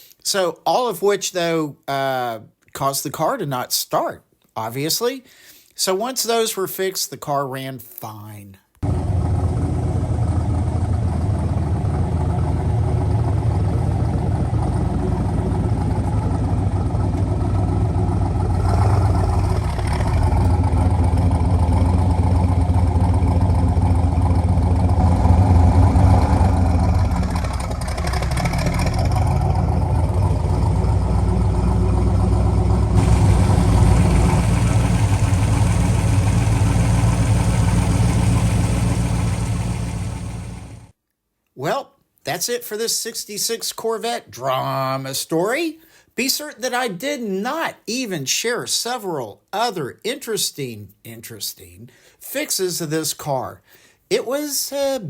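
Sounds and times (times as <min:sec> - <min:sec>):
car engine running: 0:08.8 - 0:40.9.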